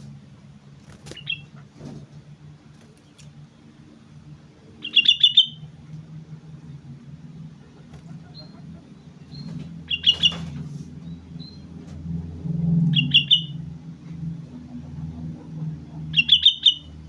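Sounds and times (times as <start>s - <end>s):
low steady hum: 0.0s - 17.0s
bird chirping: 1.0s - 1.6s, 4.8s - 5.7s, 8.0s - 11.7s, 12.8s - 13.6s, 15.0s - 17.0s.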